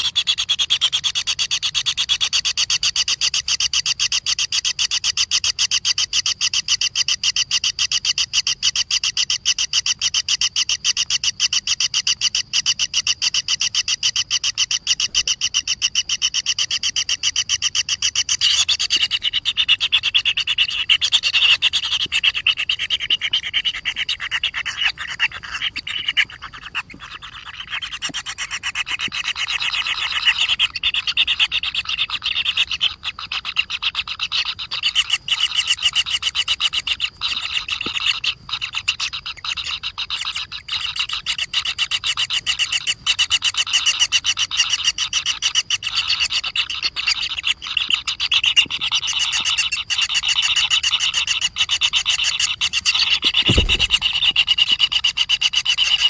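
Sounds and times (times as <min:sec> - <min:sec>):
chorus of rasping animal calls: 0:00.0 - 0:02.6, 0:18.2 - 0:56.0.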